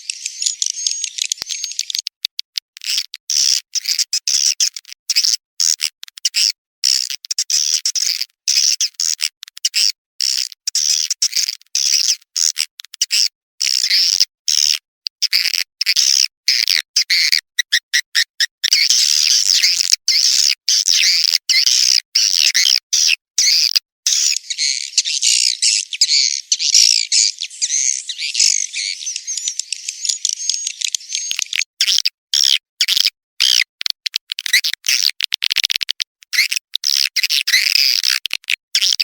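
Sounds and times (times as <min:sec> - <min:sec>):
swiftlets twittering: 0:00.0 - 0:02.0.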